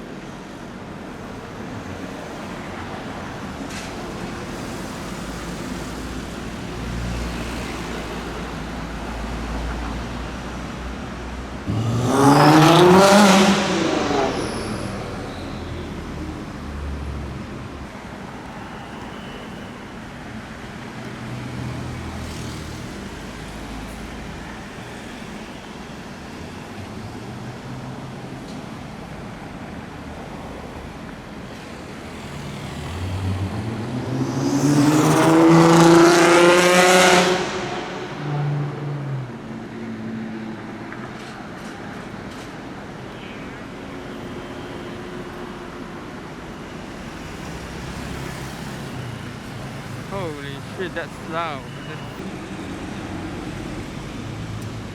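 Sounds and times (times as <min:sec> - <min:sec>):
traffic noise: 0:00.0 - 0:54.9
sports car engine accelerating: 0:11.6 - 0:15.6, 0:32.8 - 0:39.0.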